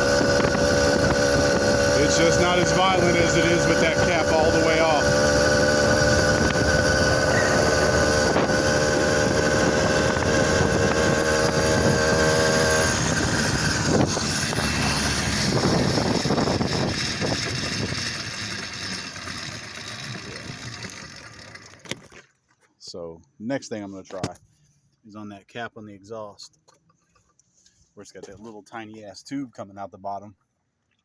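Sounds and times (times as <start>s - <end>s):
two-stroke engine running: 0.0s - 22.3s.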